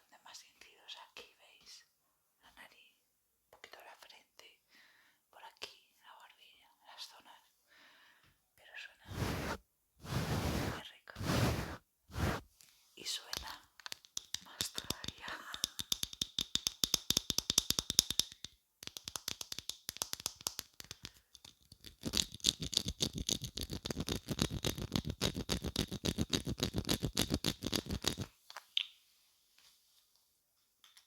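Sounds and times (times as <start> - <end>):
makeup brushes sweeping on microphone: 9.1 - 12.5.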